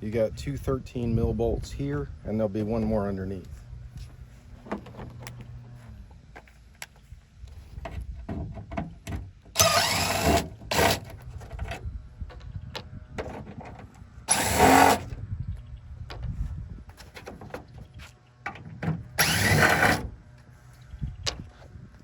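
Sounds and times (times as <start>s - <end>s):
cordless drill running: 9.6s - 11.1s, 14.3s - 15.1s, 19.2s - 20.1s.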